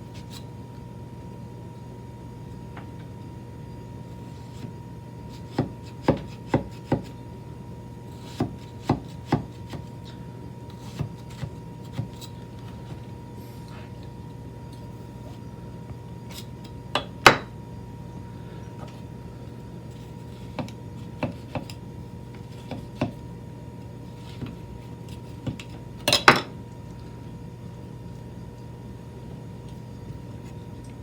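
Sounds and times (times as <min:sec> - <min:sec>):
steady low hum: 0:00.0 - 0:31.0
knife chopping on cutting board: 0:04.5 - 0:07.2, 0:08.1 - 0:09.9, 0:10.7 - 0:13.0, 0:19.9 - 0:21.8, 0:22.4 - 0:23.2, 0:24.2 - 0:26.5.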